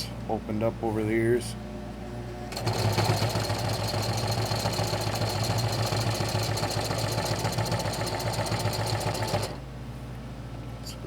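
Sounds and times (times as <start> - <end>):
electric sewing machine running: 2.5 - 9.6.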